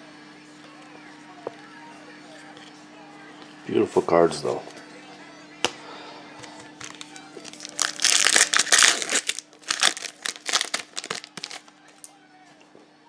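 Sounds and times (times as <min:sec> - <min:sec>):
wrapper crinkling: 0:06.4 - 0:12.1.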